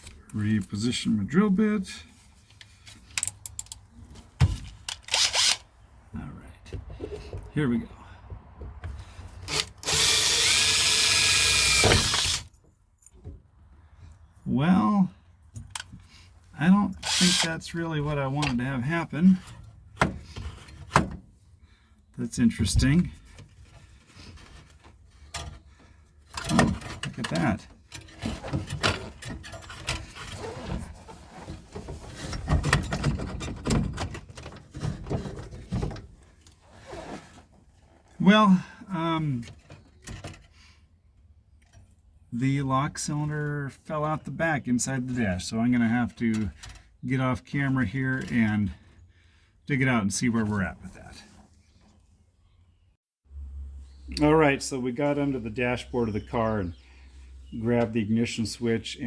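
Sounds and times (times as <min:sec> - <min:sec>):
hand tool clicking on metal lock: 0:03.1 - 0:03.8
electric drill whining: 0:09.5 - 0:12.5, 0:17.0 - 0:17.5.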